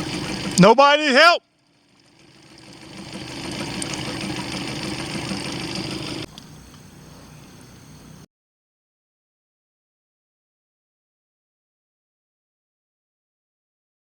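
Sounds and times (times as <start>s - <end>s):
motor humming: 0.0s - 6.6s.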